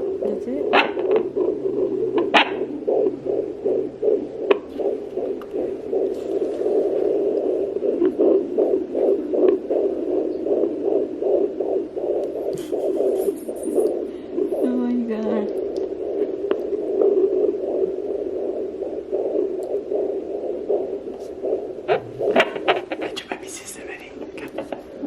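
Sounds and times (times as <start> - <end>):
fetal heartbeat whooshing pulses: 0.0 - 25.0
sharp clicks: 19.6 - 19.8.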